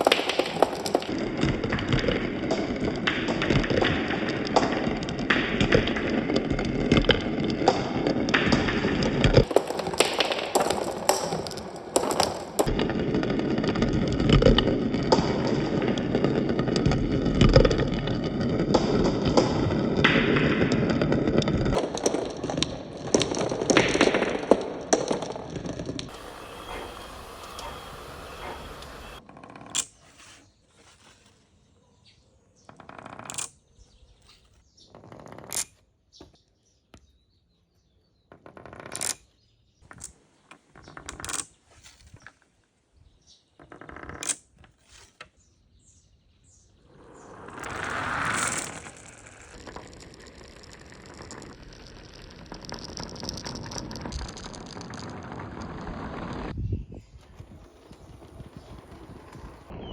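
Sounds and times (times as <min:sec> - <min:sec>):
marbles rolling and clacking on track: 0:00.0 - 0:29.9, 0:38.8 - 0:39.3, 0:41.0 - 0:41.5, 0:46.9 - 0:56.6, 0:57.2 - 0:59.8.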